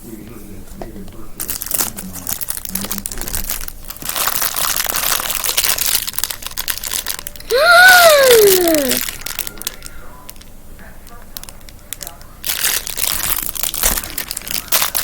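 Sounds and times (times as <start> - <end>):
plastic packaging crinkling: 1.4 - 7.5, 8.3 - 10.4, 11.4 - 15.0.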